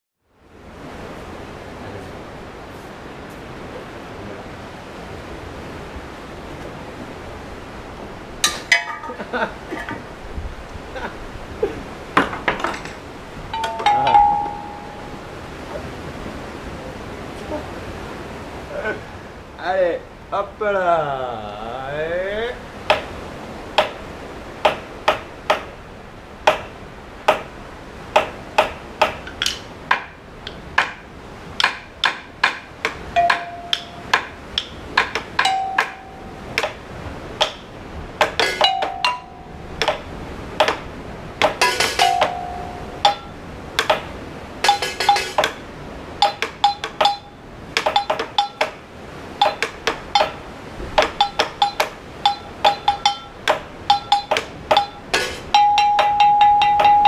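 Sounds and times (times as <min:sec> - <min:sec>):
taps and clinks on hard objects: 0:31.6 - 0:36.8, 0:38.2 - 0:40.0, 0:41.4 - 0:45.6, 0:46.2 - 0:48.8, 0:49.4 - 0:50.4, 0:51.0 - 0:57.0.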